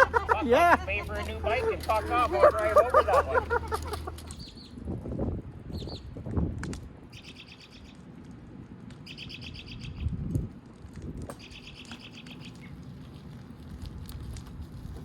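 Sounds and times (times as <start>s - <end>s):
songbird trilling: 7.2s - 7.9s, 9.1s - 10.1s, 11.4s - 12.6s.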